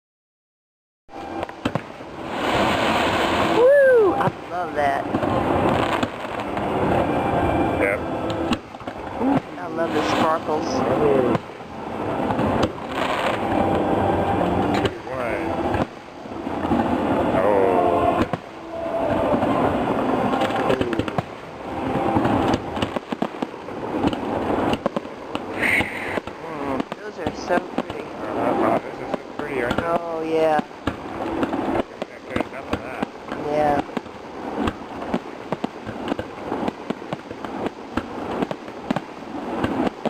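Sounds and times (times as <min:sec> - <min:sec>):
firework whistles: 0:01.1 - 0:04.4, 0:12.8 - 0:14.9
fireworks bursts rumbling: 0:01.3 - 0:40.0
firework cracks: 0:01.5 - 0:07.0, 0:12.3 - 0:13.6, 0:19.2 - 0:21.5, 0:22.1 - 0:40.0.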